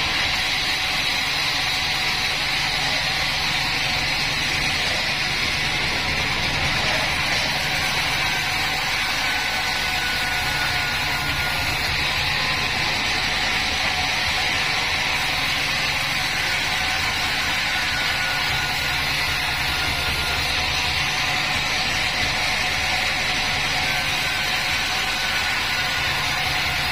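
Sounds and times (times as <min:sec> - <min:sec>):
band sawmill running: 0:00.0 - 0:26.9.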